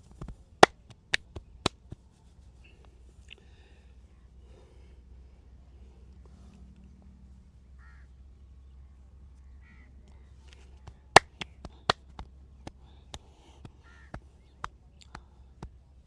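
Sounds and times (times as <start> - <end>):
sharp snaps: 11.2 - 13.3.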